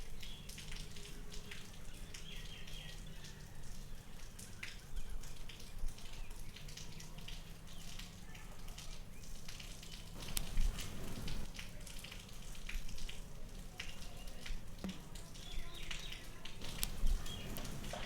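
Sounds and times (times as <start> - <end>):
fingernails clicking in hair: 10.2 - 11.5, 16.6 - 18.0.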